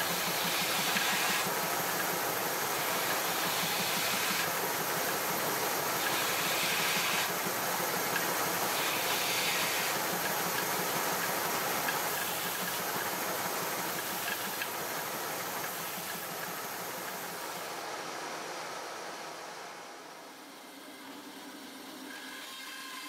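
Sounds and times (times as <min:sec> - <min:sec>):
wood cutting hiss: 0:00.0 - 0:17.7
woodworking power tool running: 0:00.0 - 0:17.7.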